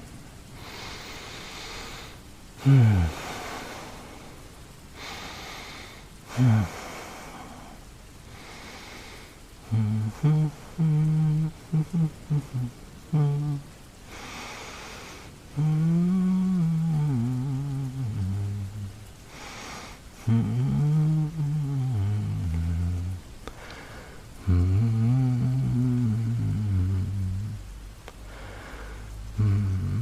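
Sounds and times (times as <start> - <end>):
man breathing: 0.6 - 17.3, 17.9 - 27.6, 28.2 - 30.0
man humming low notes: 2.6 - 3.3, 9.6 - 13.8, 15.5 - 19.1, 20.2 - 23.2, 24.4 - 27.9, 29.2 - 30.0
man sighing: 2.6 - 4.0.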